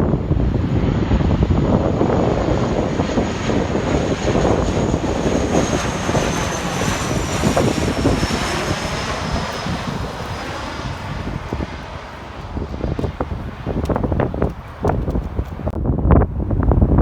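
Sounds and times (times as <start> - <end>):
airliner passing low: 0.0 - 15.8.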